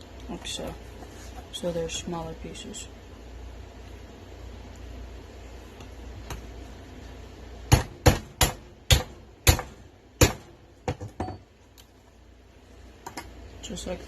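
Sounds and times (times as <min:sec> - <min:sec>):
knife chopping crab shell: 0:07.7 - 0:10.5.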